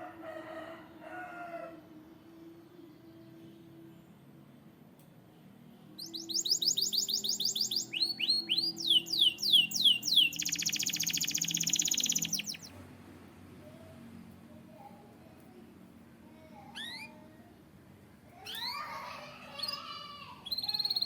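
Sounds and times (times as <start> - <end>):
canary singing: 6.0 - 12.8, 16.5 - 17.4, 18.4 - 21.0.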